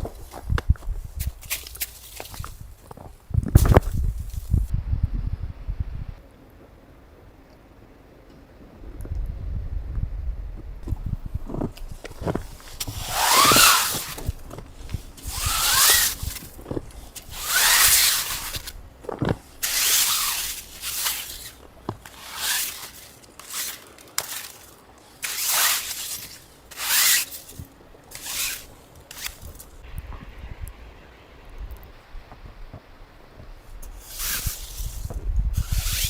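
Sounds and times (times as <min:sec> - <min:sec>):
hand saw cutting wood: 0:12.7 - 0:14.4, 0:15.2 - 0:16.6, 0:17.2 - 0:18.7, 0:19.5 - 0:29.7, 0:35.6 - 0:36.0.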